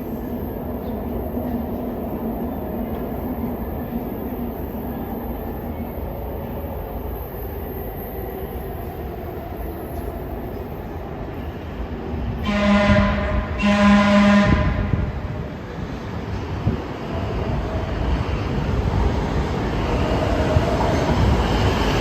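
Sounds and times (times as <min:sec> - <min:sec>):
subway train rumbling: 0:00.0 - 0:22.0
train horn blasts: 0:12.4 - 0:15.4.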